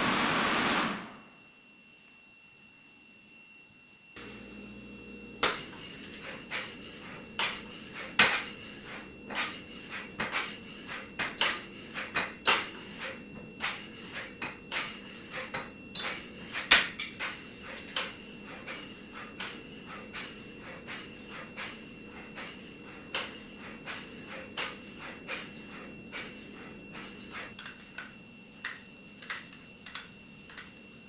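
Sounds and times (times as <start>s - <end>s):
faint hum with high tone: 0.0s - 31.0s.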